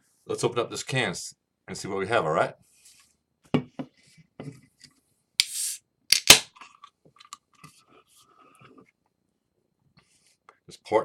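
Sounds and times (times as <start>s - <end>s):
beer can opening hiss: 5.4s - 6.4s.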